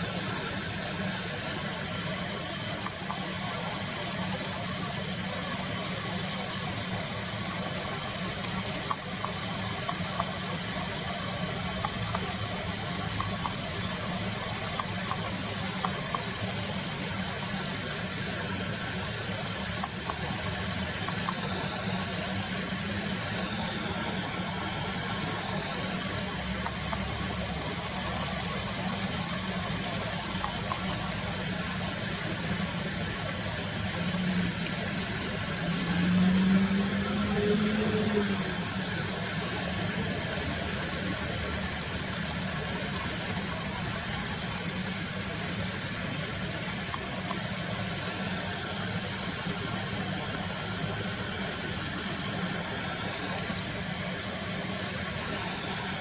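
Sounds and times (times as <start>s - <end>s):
high-pitched hiss: 0.0s - 56.0s.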